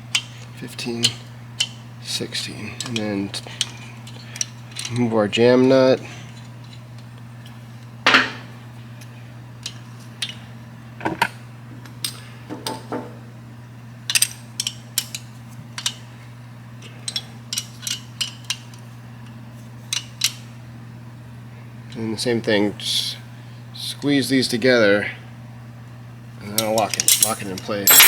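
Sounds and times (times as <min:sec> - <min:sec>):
metallic clinks of hand wrenches: 0:27.1 - 0:28.0.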